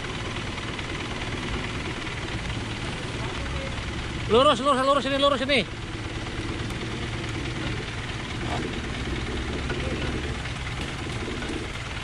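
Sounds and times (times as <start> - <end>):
vehicle engine running steadily: 0.0 - 12.0.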